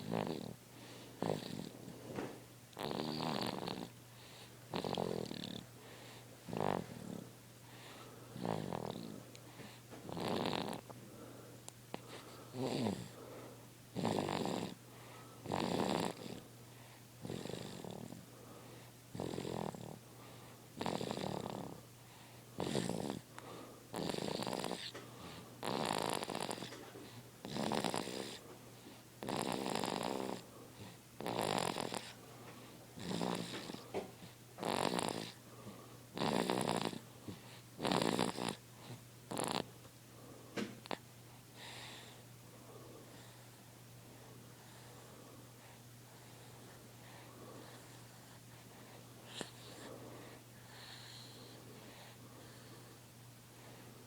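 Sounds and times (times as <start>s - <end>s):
baby snoring: 0.0s - 0.6s, 1.2s - 7.3s, 8.3s - 10.9s, 11.9s - 13.2s, 13.9s - 14.8s, 15.4s - 16.5s, 17.2s - 18.3s, 19.1s - 20.0s, 20.8s - 21.9s, 22.6s - 28.4s, 29.2s - 32.2s, 33.0s - 39.8s, 49.2s - 52.9s.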